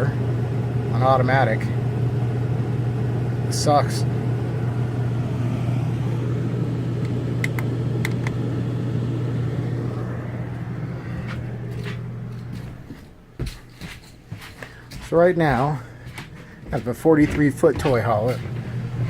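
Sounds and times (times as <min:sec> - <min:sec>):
air conditioner humming: 0:00.0 - 0:19.0.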